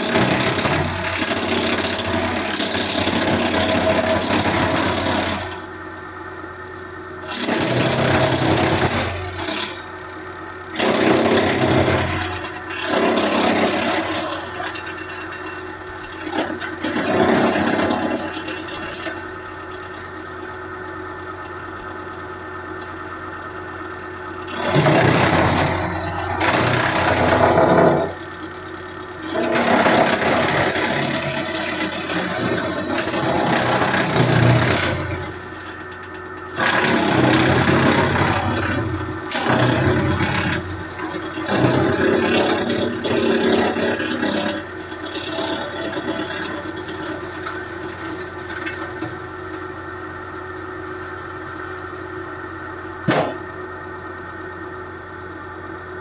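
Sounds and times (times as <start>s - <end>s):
wood being chipped: 0.0s - 5.7s, 7.2s - 20.3s, 24.4s - 49.4s
wood chipper engine running: 0.0s - 56.0s.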